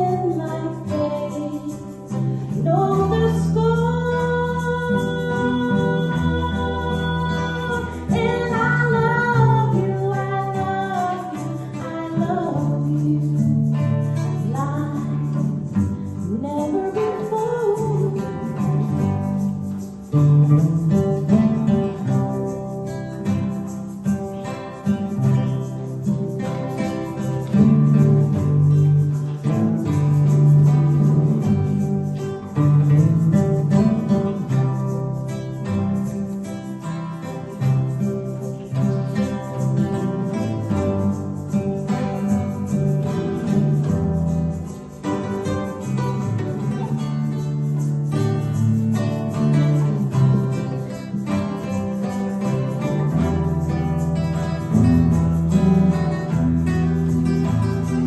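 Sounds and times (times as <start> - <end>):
person singing: 0.0 - 15.5
guitar: 0.0 - 58.0.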